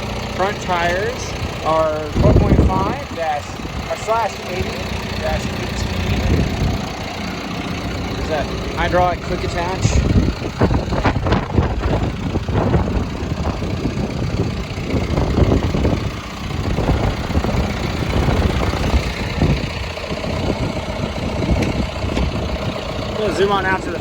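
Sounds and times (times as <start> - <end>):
diesel engine idling: 0.0 - 24.0
knocks and rumbles: 10.0 - 23.0.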